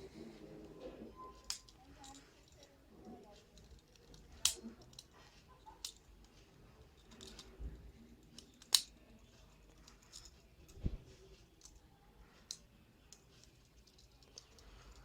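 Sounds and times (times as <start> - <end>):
multitool metal clicks and snaps: 3.7 - 5.1, 8.4 - 9.0.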